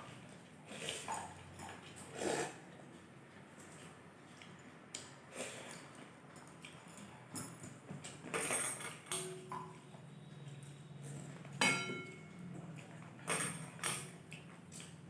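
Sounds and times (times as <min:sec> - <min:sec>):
metal dishes clinking: 0:08.3 - 0:09.8, 0:11.6 - 0:12.4.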